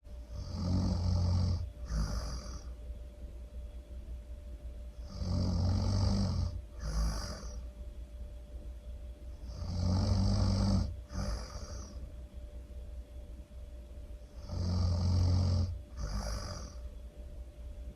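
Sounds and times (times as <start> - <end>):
loud snoring: 0.3 - 2.8, 5.0 - 7.6, 9.4 - 12.0, 14.3 - 16.8.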